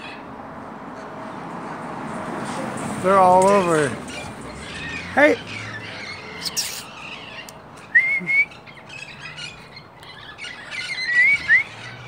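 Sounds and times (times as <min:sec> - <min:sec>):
parrots squawking and whistling: 0:04.1 - 0:12.0.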